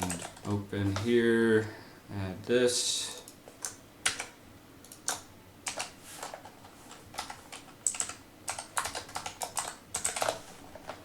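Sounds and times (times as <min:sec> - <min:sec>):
computer keyboard typing: 0:00.0 - 0:00.6, 0:03.2 - 0:11.0.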